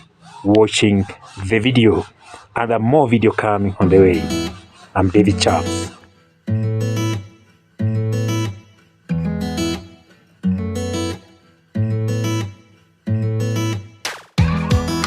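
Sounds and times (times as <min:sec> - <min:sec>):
guitar chords ringing: 0:03.9 - 0:04.6, 0:05.2 - 0:15.0.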